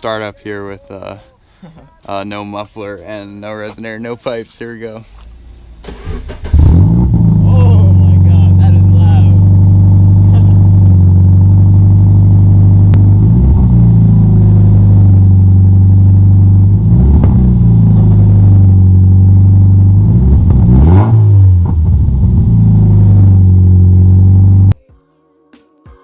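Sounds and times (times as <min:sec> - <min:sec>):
car engine idling and revving: 0:05.2 - 0:24.8.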